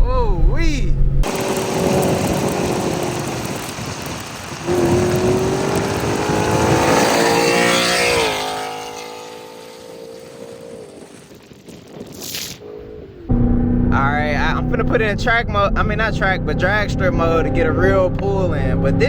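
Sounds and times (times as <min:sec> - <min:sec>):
car engine accelerating: 0:00.0 - 0:11.3, 0:13.2 - 0:19.0.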